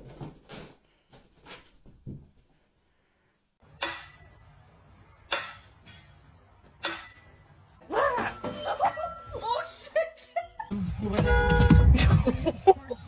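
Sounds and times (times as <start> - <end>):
small bell ringing: 3.8 - 7.8.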